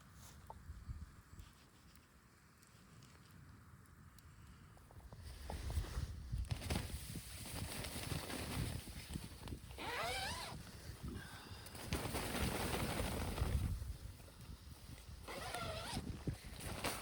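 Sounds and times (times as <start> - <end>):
zipper pulled: 9.8 - 10.6, 15.3 - 16.1.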